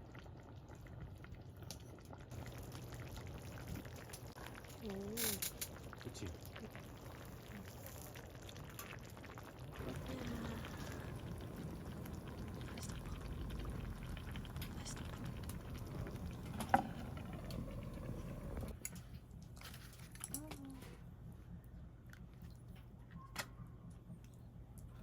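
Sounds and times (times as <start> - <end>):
pot of food boiling: 0.0 - 18.8.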